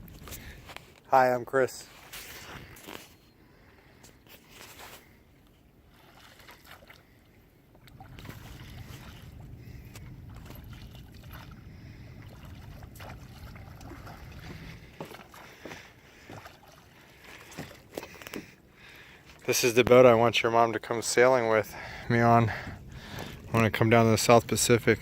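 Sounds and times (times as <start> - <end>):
boat low rumble: 0.0 - 25.0
water splashes and knocks: 5.9 - 18.6.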